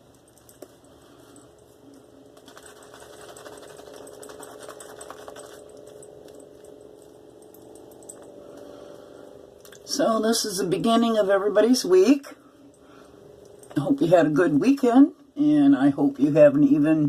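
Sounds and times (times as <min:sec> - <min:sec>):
shaving brush scratching on skin: 0:02.4 - 0:06.6.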